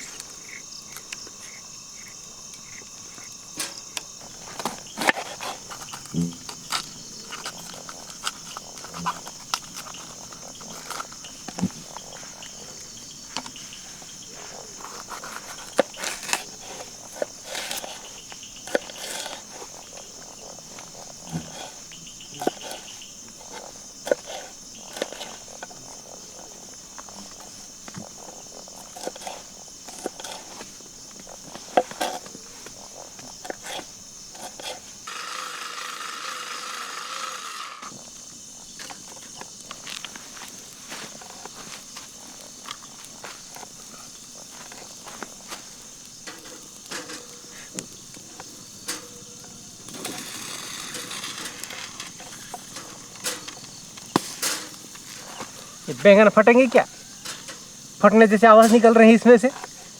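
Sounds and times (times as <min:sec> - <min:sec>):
clicks and crackles: 0:00.0 - 0:35.3, 0:37.8 - 0:59.9
insects droning: 0:00.0 - 0:59.9.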